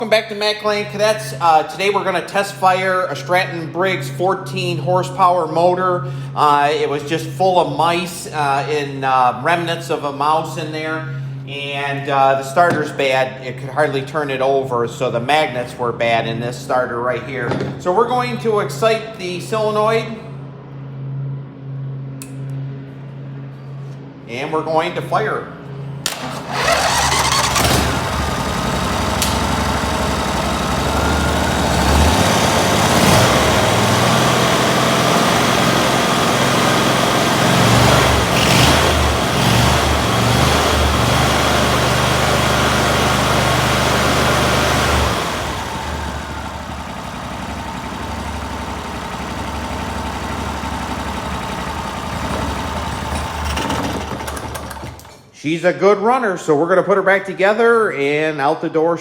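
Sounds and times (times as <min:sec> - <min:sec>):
lawn tractor engine running: 0:26.1 - 0:55.2.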